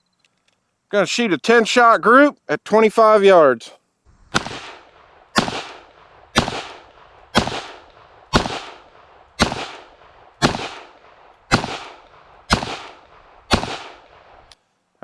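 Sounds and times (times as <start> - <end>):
pistol shots with echo: 4.3 - 14.3.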